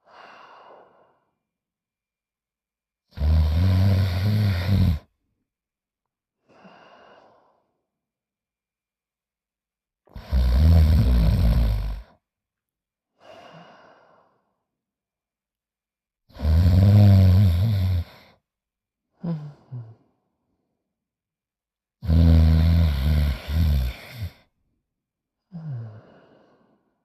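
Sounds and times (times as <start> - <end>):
person snoring: 3.1 - 5.1, 10.1 - 12.2, 16.3 - 18.4, 22.0 - 24.5, 25.5 - 26.8
faint breath out: 13.2 - 14.6.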